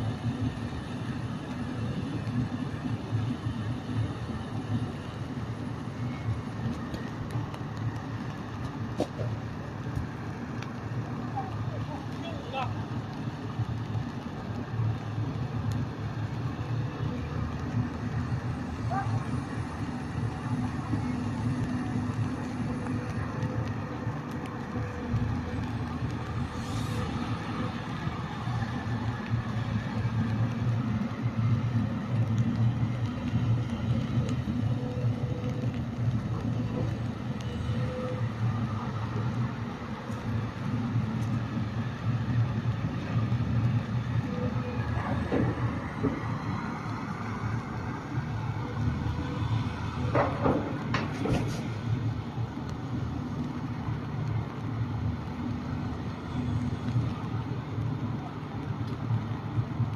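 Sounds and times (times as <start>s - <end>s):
excavator diesel engine running: 29.7s - 42.2s.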